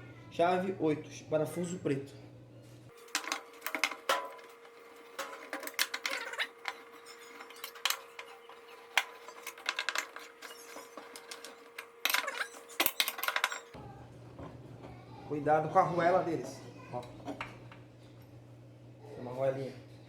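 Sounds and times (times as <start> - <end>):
metal screws clicking and clinking: 5.1 - 13.8.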